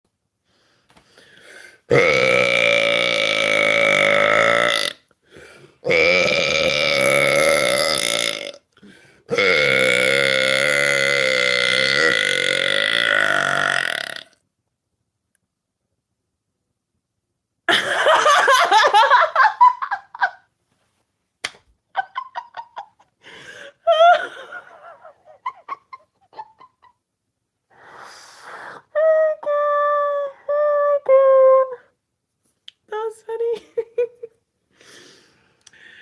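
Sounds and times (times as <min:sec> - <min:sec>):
person laughing: 0:17.7 - 0:20.5, 0:21.9 - 0:27.1, 0:33.5 - 0:34.4.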